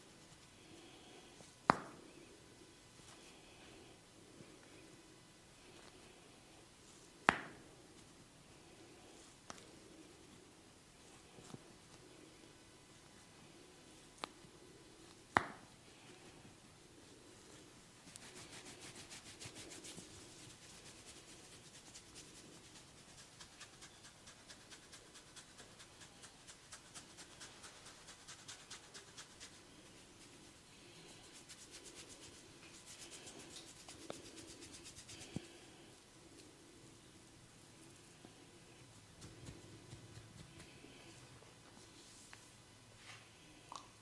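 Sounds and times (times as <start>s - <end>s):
fingers scratching hair: 18.1s - 35.6s, 38.9s - 41.1s.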